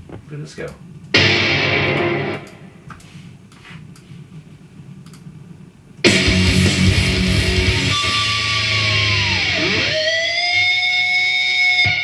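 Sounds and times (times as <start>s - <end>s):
distorted electric guitar: 1.1s - 2.6s, 6.0s - 12.0s
drums: 6.0s - 10.8s.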